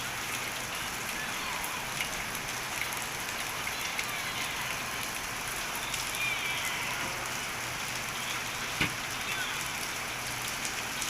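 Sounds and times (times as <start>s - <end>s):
steady rain falling: 0.0s - 11.0s
raindrop ticks: 0.1s - 6.3s.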